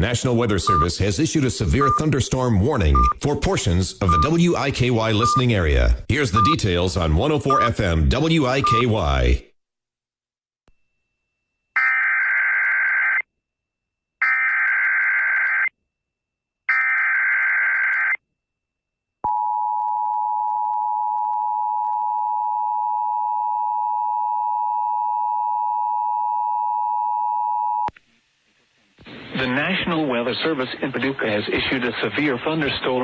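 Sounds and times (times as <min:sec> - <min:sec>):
screeching data tones: 0:16.7 - 0:18.2.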